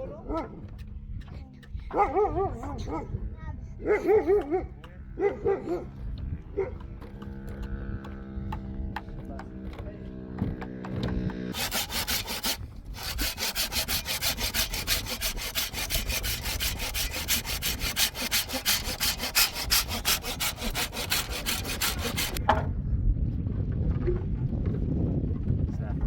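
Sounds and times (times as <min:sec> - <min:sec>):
hand saw cutting wood: 0:10.5 - 0:22.4.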